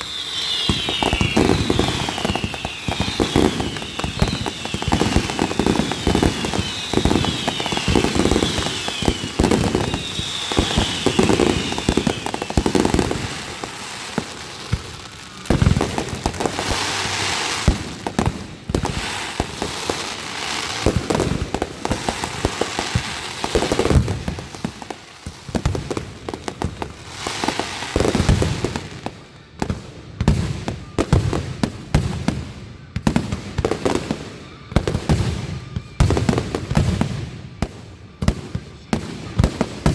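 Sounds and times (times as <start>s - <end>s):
high falling whistles: 0.0s - 17.7s
fireworks booming: 0.0s - 39.9s
fireworks crackling: 0.0s - 39.9s.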